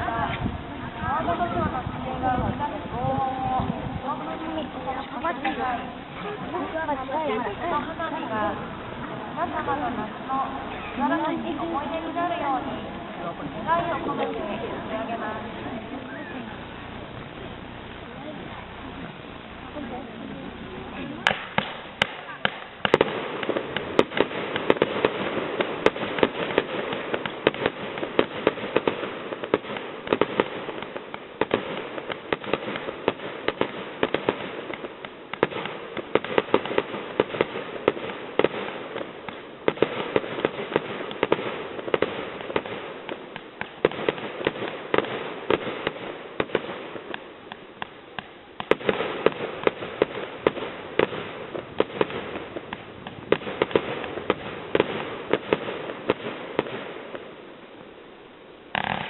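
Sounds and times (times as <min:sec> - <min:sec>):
echoing rumble: 0:00.0 - 0:25.8
firework shells bursting: 0:03.5 - 0:57.4, 0:58.7 - 0:59.0.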